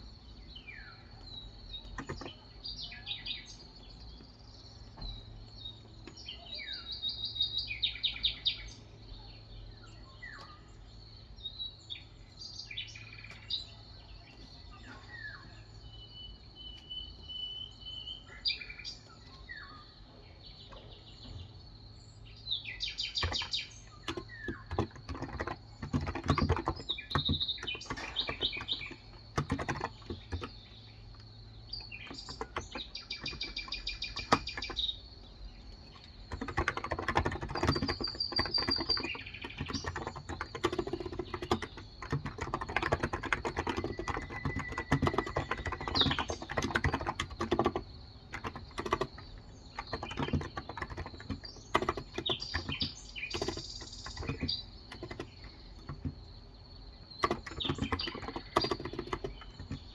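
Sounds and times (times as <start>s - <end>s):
birds chirping: 0.0s - 59.9s
keyboard typing: 1.7s - 2.5s, 23.1s - 56.4s, 57.0s - 59.9s.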